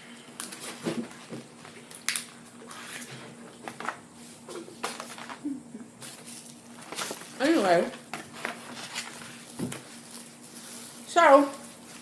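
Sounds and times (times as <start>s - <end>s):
wrappers and containers rustling: 4.7s - 5.4s, 6.0s - 12.0s.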